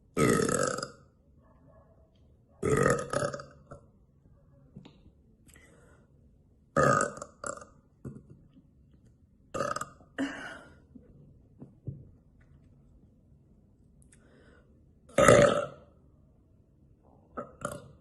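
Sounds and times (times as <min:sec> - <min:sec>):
woman burping: 0:09.5 - 0:10.9, 0:15.1 - 0:15.8.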